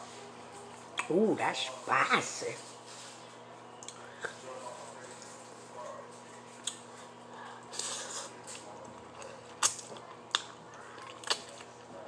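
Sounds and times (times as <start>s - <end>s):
eating sounds: 6.5s - 12.0s.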